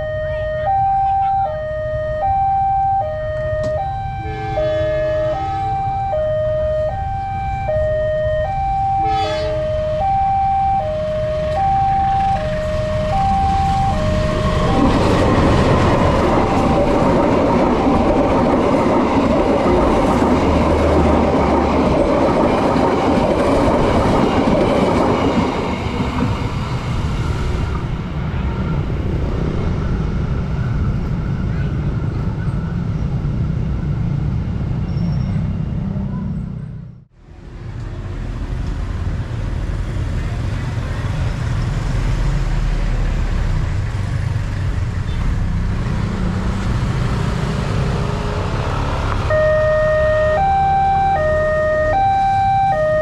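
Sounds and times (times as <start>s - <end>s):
two-note level-crossing siren: 0.0s - 24.6s, 49.2s - 53.0s
train passing with rushing noise: 0.0s - 53.0s.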